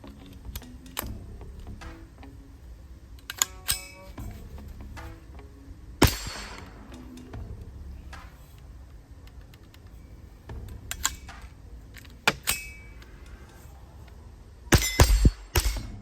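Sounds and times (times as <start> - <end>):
metallic clicks of rifle handling: 3.1 - 4.2
rifle shots: 6.0 - 6.9, 14.7 - 16.0
steel plate targets ringing: 6.0 - 7.2, 14.7 - 16.0.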